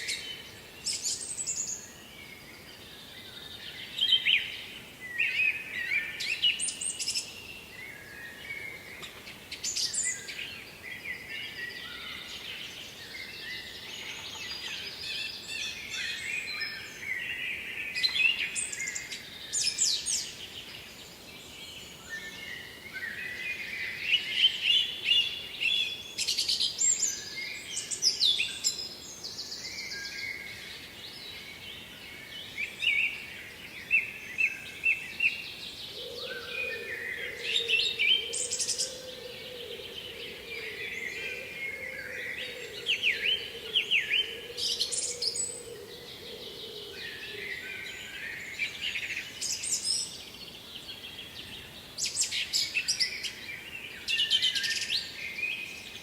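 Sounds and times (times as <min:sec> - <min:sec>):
faint steady hiss: 0:00.0 - 0:56.0
songbirds chirping and trilling: 0:00.0 - 0:56.0.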